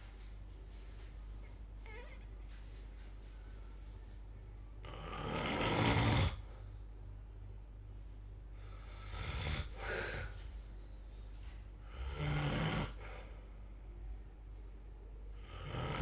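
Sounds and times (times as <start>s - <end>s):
person snoring: 4.8s - 6.5s, 9.0s - 10.3s, 11.9s - 13.1s, 15.4s - 16.0s.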